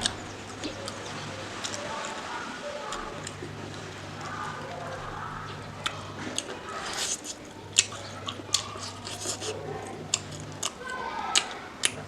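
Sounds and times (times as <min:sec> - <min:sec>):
wet chewing: 0:00.0 - 0:12.0
mouth smacking clicks: 0:05.8 - 0:12.0.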